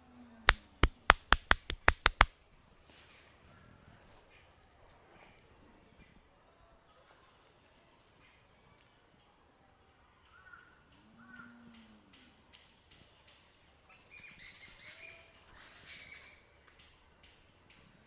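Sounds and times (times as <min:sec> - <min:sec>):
faint bird calls: 0:10.1 - 0:17.0.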